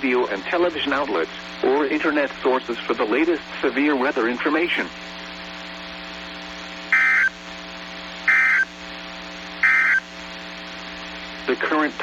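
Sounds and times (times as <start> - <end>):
steady electrical hum: 0.0 - 12.0
shrill warbling digital tone bursts: 7.0 - 7.3, 8.3 - 8.7, 9.6 - 10.0.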